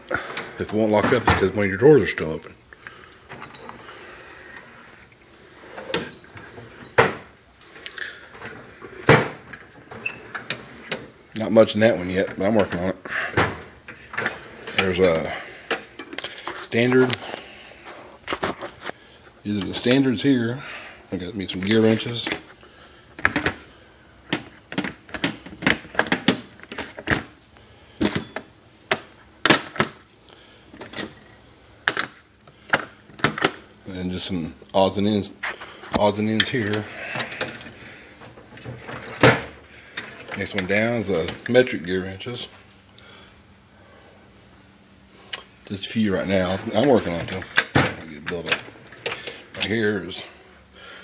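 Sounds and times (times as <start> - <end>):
metal tools clanking: 28.0 - 29.0
metallic ring: 28.0 - 29.0.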